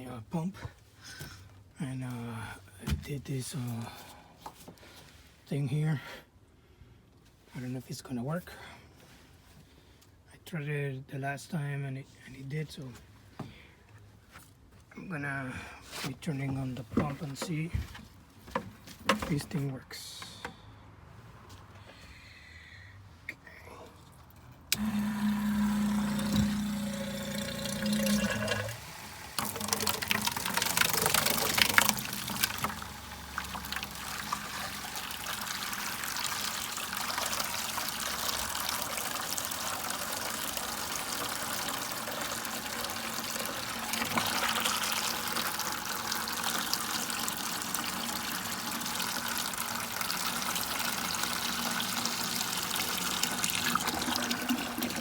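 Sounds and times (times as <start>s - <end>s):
pump humming: 24.7s - 55.0s
water pouring and splashing: 25.8s - 55.0s.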